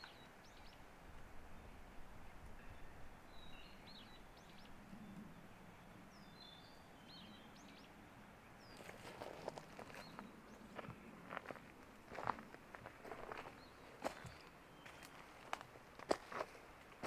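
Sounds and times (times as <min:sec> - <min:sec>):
small birds chirping: 0:02.4 - 0:16.6
footsteps on a forest trail: 0:08.7 - 0:17.0.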